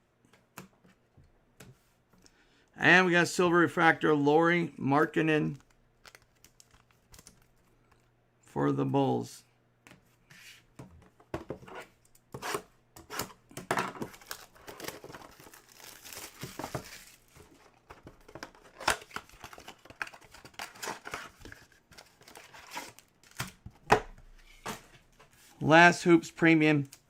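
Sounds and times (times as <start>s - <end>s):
plastic wrapper crinkling and ripping: 5.6s - 7.6s, 14.0s - 23.5s.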